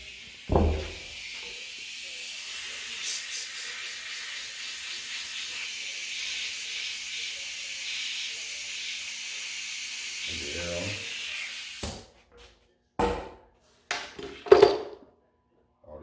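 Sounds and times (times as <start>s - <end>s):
compressed air hissing: 0.0s - 11.8s
dull thump: 0.5s - 1.1s.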